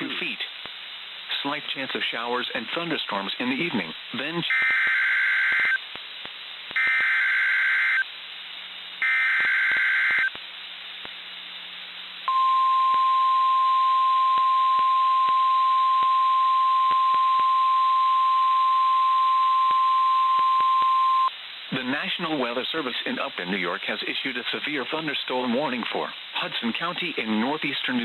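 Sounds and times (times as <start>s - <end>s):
radio hiss: 0.0s - 28.0s
steady warning alarm tone: 9.0s - 10.3s, 12.3s - 21.3s.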